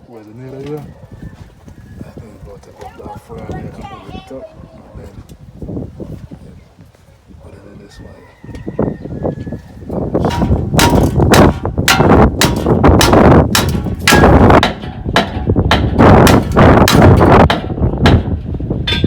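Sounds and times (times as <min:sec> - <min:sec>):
metallic banging: 0:10.2 - 0:19.0.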